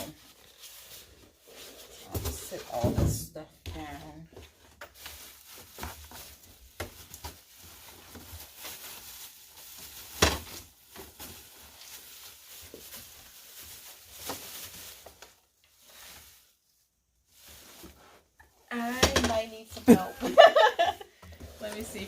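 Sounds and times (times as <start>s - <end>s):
cardboard box rustling and scraping: 21.4s - 22.0s.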